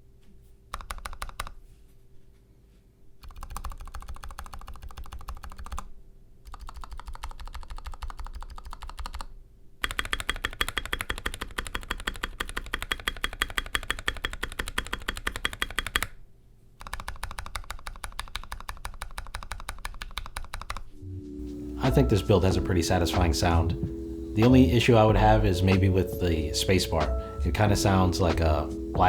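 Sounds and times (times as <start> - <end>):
fast typing on mechanical keyboard: 0.7 - 1.6, 3.2 - 16.1, 16.8 - 20.9.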